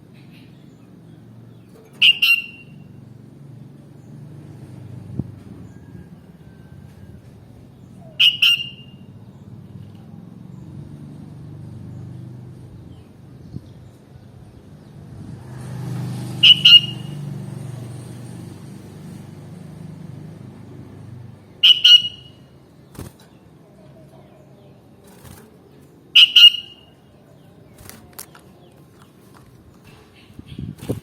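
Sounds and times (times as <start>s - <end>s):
bird two-note calls: 21.6s - 22.4s, 26.2s - 26.9s.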